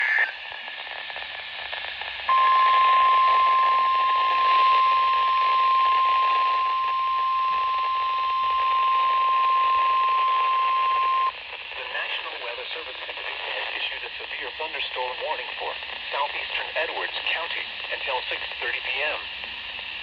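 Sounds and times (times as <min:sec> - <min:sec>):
radio static hiss: 0:00.0 - 0:20.0
steady warning alarm tone: 0:02.3 - 0:11.3.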